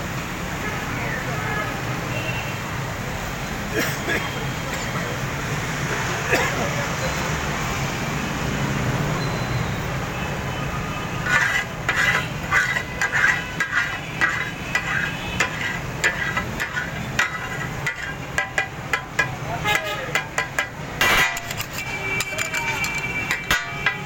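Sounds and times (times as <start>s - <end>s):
metal spatulas clanking on griddle: 11.2s - 24.0s.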